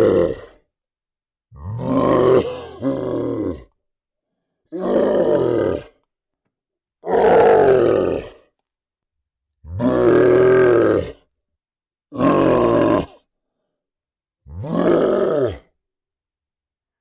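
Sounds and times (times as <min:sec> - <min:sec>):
monster growls: 0:01.6 - 0:03.7, 0:04.8 - 0:05.9, 0:07.1 - 0:08.4, 0:09.7 - 0:11.2, 0:12.2 - 0:13.2, 0:14.5 - 0:15.6.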